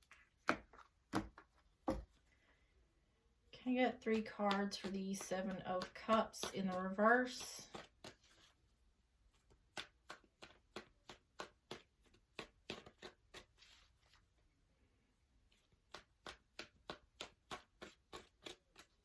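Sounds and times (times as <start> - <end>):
cards being shuffled by hand: 4.0 - 14.4, 15.5 - 19.0.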